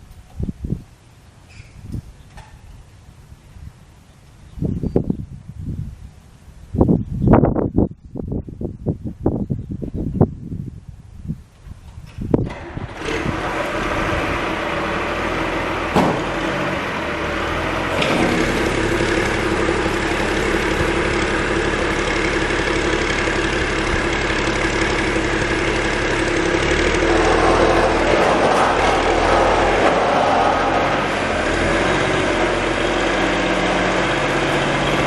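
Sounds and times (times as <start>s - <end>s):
diesel engine running: 12.4s - 35.0s
single knock: 16.0s - 16.2s.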